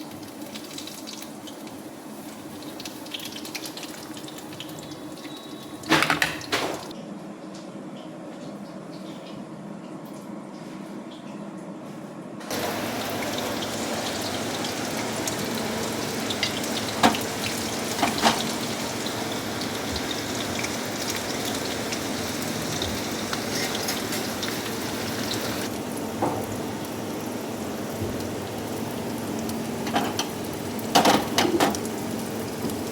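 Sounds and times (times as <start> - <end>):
food sizzling in hot oil: 12.5 - 32.9.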